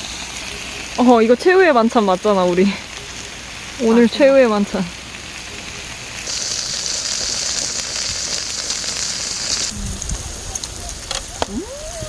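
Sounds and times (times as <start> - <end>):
food sizzling on a grill plate: 0.0 - 12.0
short rising-and-falling vocal sound: 9.7 - 10.2, 11.5 - 12.0.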